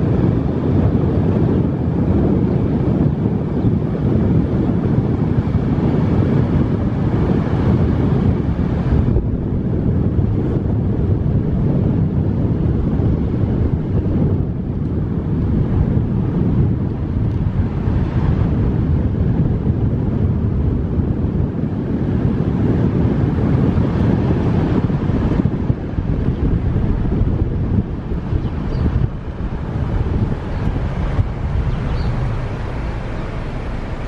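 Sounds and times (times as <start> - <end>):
wind rumble on microphone: 0.0 - 34.0
car road noise: 23.3 - 34.0.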